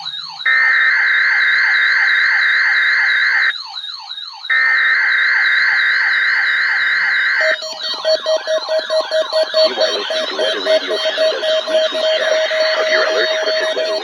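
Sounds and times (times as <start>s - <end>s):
falling siren sweep: 0.0s - 14.0s
steady high alarm tone: 0.0s - 14.0s
warbling alarm tone: 6.8s - 14.0s.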